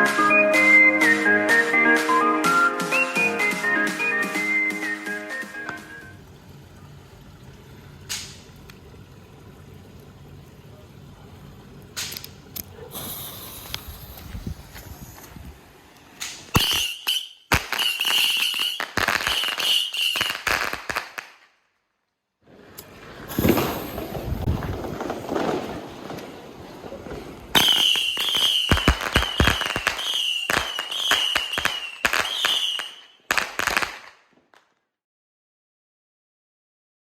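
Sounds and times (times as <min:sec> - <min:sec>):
firework pops and crackles: 0:08.1 - 0:08.5, 0:12.0 - 0:15.3, 0:16.2 - 0:21.6, 0:22.6 - 0:34.8
hissing and crackling: 0:12.0 - 0:21.3, 0:22.7 - 0:34.1
firework whistles: 0:16.2 - 0:21.1, 0:23.3 - 0:24.2, 0:27.5 - 0:34.1.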